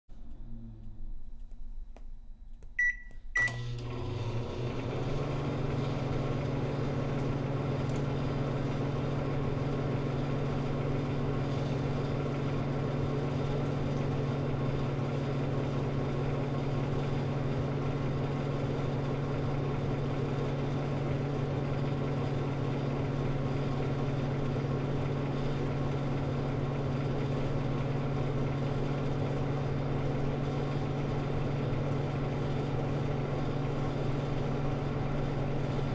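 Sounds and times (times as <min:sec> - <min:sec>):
microwave beeps: 0:02.8 - 0:04.1
microwave click: 0:02.8 - 0:04.1
microwave humming: 0:02.8 - 0:35.9.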